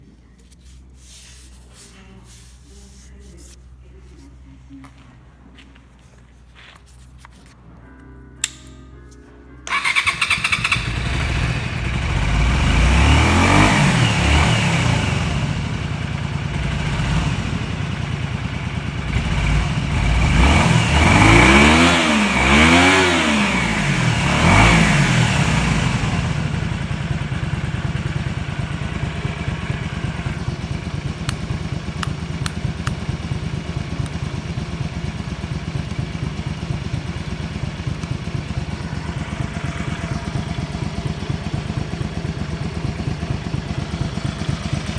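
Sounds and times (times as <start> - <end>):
motorcycle engine revving and idling: 9.7 - 44.9.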